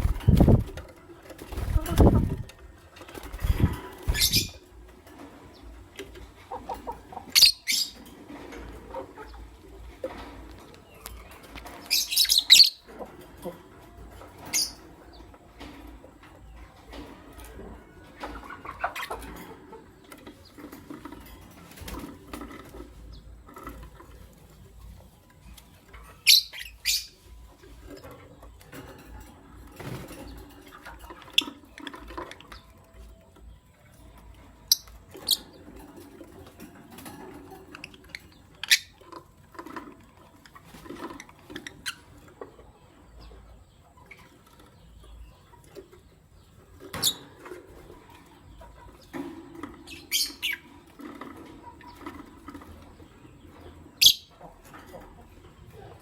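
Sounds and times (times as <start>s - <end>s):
lovebirds chirping: 0.0s - 4.8s, 6.4s - 8.1s, 9.2s - 13.5s, 14.4s - 15.3s, 18.2s - 28.8s, 36.7s - 56.0s
rustling and wing flutter: 0.0s - 6.8s.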